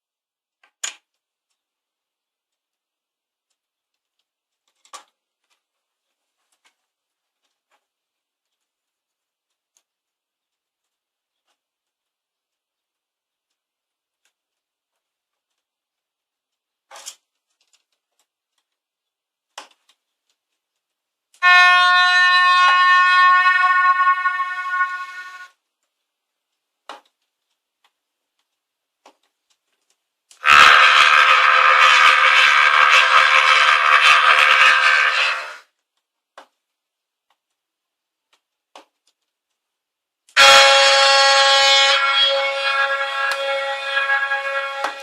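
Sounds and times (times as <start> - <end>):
ship horn blast: 21.4 - 25.5, 30.4 - 35.6, 40.4 - 45.0.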